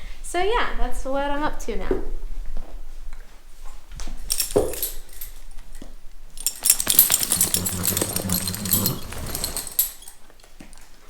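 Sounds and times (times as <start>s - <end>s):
blades crackling through coat: 6.4s - 10.1s.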